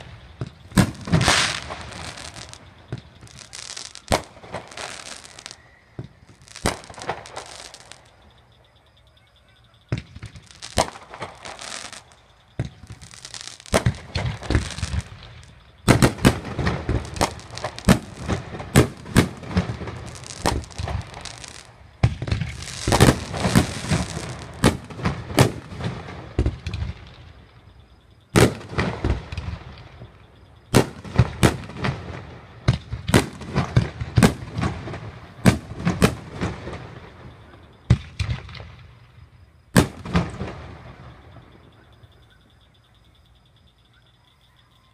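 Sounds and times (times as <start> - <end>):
fireworks bangs and crackling: 0.0 - 8.7, 9.8 - 42.0.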